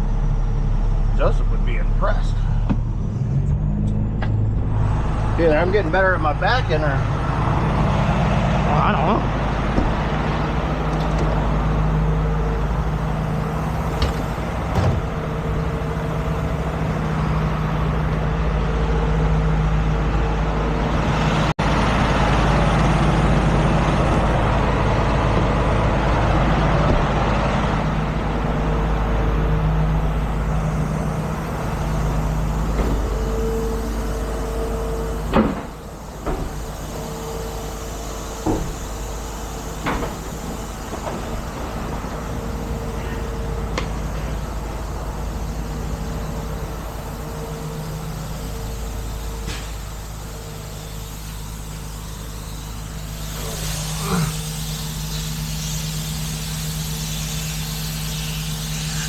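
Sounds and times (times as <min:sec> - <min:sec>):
diesel engine running: 0:00.0 - 0:59.0
sharp clunk: 0:14.0 - 0:15.1.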